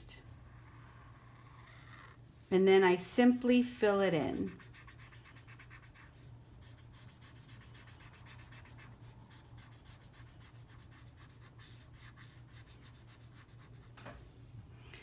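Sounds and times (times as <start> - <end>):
low steady hum: 0.0 - 15.0
marker scratching on paper: 4.4 - 13.9.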